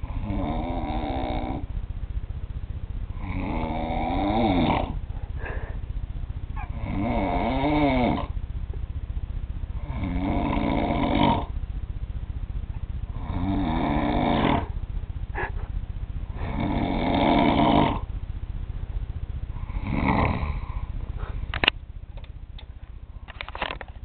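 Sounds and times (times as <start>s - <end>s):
man snoring heavily: 0.0s - 1.7s, 3.2s - 5.8s, 6.6s - 8.4s, 9.8s - 11.6s, 13.1s - 14.8s, 16.3s - 18.1s, 19.6s - 20.9s.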